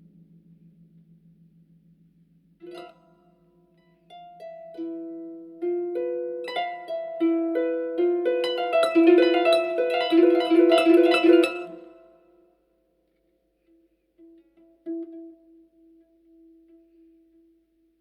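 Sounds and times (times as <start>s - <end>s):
harp notes plucked: 4.1s - 12.1s.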